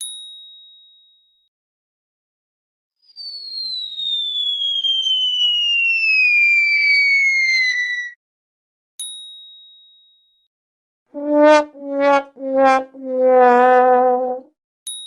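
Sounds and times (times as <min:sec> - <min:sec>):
descending cartoon whistle: 0:03.1 - 0:08.2, 0:11.2 - 0:14.4.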